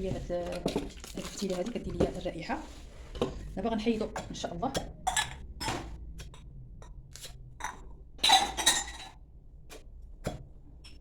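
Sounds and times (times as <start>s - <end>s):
glass cups clinking: 5.1s - 5.8s, 7.6s - 9.2s.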